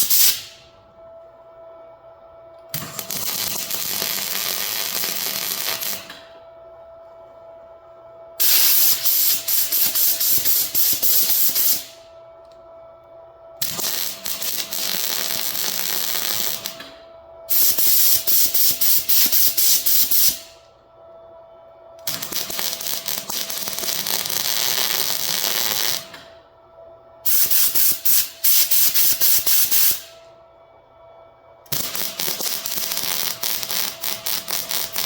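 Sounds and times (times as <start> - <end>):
welder crackling: 2.8 - 6.2.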